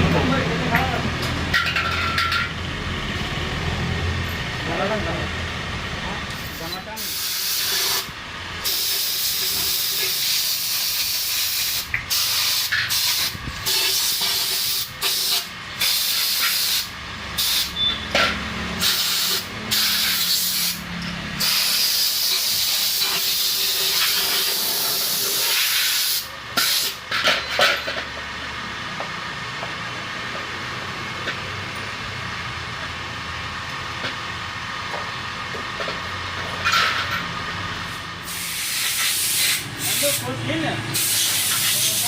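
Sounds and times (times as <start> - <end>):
high-pressure spray gun hissing: 6.5 - 18.0, 18.8 - 27.0, 38.2 - 42.0.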